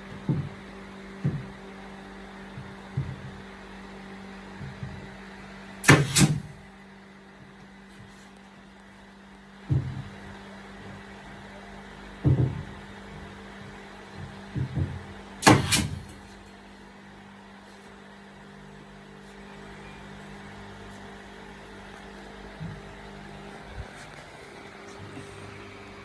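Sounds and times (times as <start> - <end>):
low mechanical hum: 0.0 - 26.0
knocks or thumps: 5.8 - 6.6, 15.4 - 16.2.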